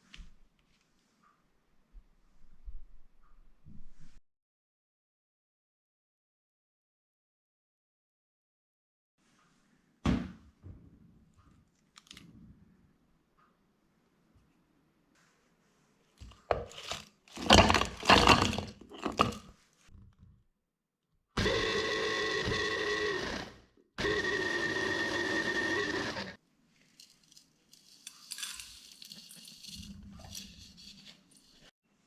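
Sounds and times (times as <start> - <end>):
crunching and scraping: 16.2 - 19.8, 26.1 - 31.7
small electric blender running: 21.4 - 26.4.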